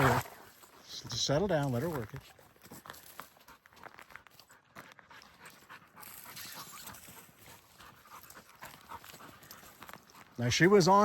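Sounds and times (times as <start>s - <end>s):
dog panting faintly: 3.2s - 10.4s.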